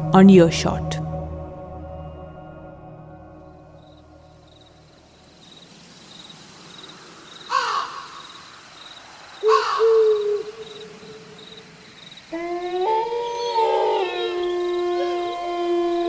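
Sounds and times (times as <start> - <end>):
owl hooting: 7.4 - 16.0.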